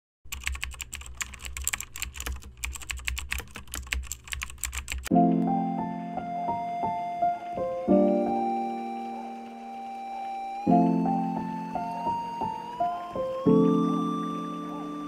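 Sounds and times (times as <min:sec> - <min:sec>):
rapid irregular clicking: 0:00.3 - 0:05.1
piano music: 0:05.1 - 0:15.0.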